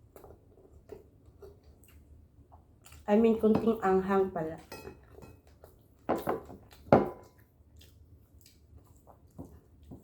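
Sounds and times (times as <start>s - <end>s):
faint mouth and table noises: 0.0s - 10.0s.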